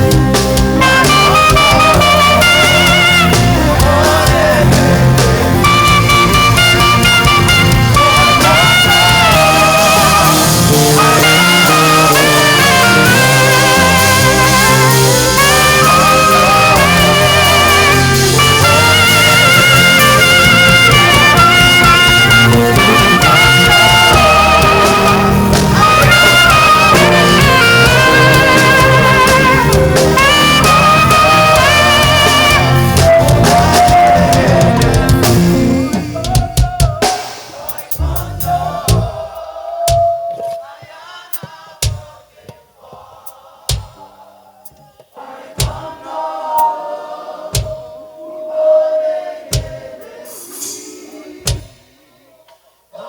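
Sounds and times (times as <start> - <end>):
saxophone melody with vibrato: 0.0 - 36.3, 46.3 - 50.5
backing band with bass and drums: 0.0 - 40.7, 47.5 - 50.8
cymbal hits: 47.5 - 51.8.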